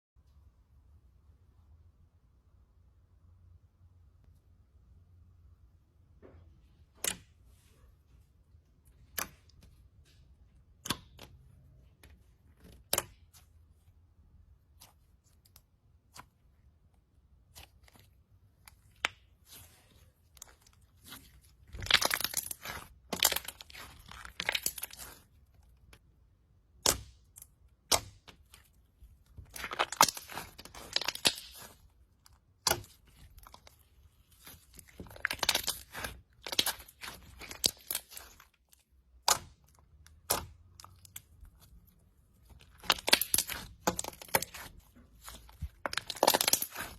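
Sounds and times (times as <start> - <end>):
slime popping and crackling: 17.4 - 46.9.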